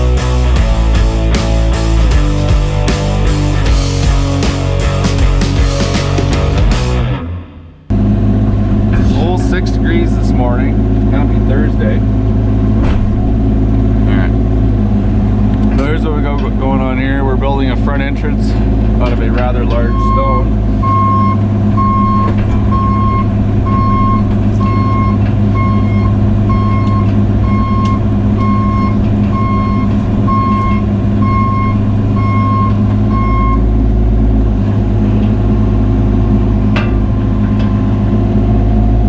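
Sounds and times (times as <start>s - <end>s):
diesel engine running: 0.0s - 39.0s
travel alarm beeping: 19.7s - 33.8s.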